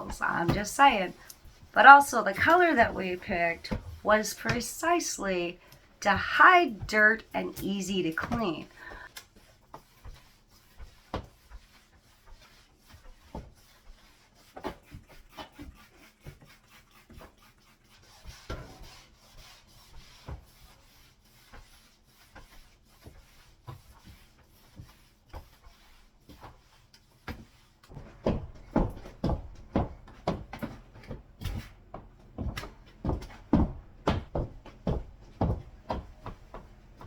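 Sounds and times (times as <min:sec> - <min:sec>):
rubbing across floor: 0:08.0 - 0:37.0.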